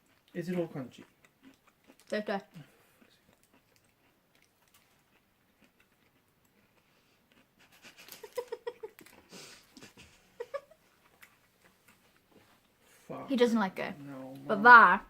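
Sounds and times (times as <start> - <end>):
chewing crunchy candy: 0.0 - 10.0.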